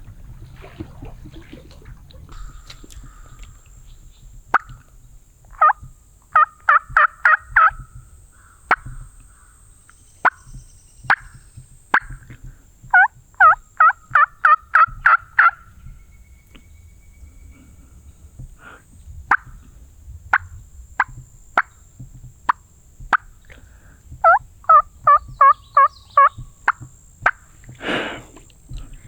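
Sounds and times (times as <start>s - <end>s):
turkey yelps: 5.5s - 5.8s, 6.4s - 7.8s, 12.9s - 15.6s, 24.2s - 26.8s.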